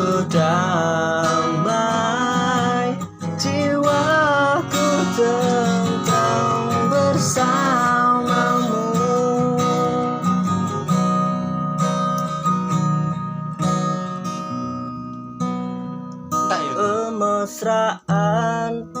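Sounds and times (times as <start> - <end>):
person singing: 0.0 - 10.5, 16.4 - 19.0
strummed acoustic guitar: 0.0 - 19.0.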